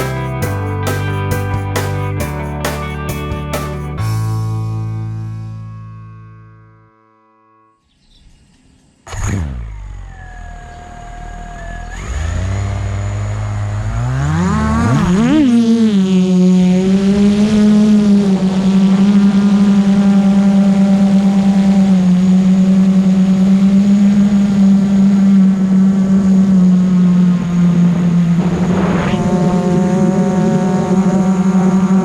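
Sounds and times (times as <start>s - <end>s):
drone motors buzzing: 9.0s - 32.0s.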